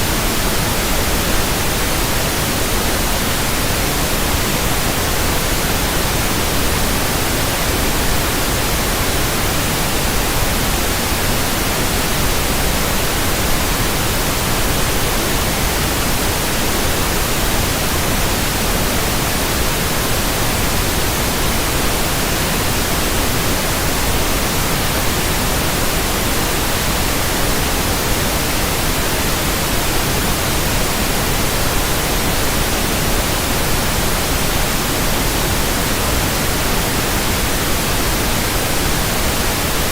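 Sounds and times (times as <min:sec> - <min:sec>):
loud steady static hiss: 0:00.0 - 0:39.9.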